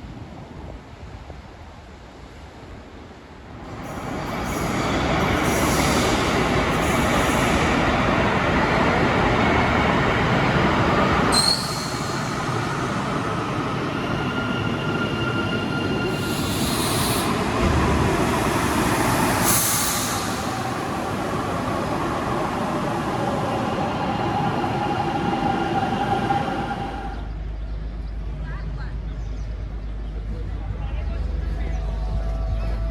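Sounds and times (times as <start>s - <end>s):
train rumbling on rails: 0.0s - 32.9s
wheel squeal: 11.3s - 12.4s
short high hisses: 11.3s - 12.6s, 16.1s - 17.5s, 19.0s - 20.9s.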